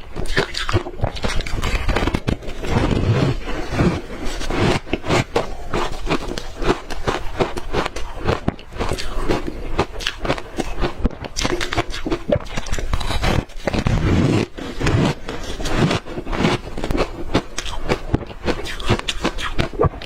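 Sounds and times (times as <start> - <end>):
ice being bitten and chewed: 5.2 - 20.0.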